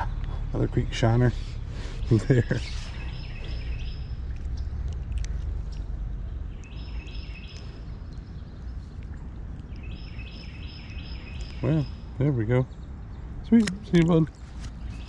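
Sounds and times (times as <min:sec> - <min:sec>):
songbird singing high notes: 0:01.5 - 0:04.3, 0:06.5 - 0:08.5, 0:09.7 - 0:12.8.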